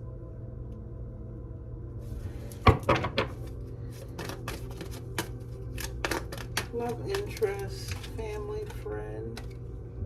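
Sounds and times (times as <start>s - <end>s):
cards clicking and flicking: 4.0s - 9.6s.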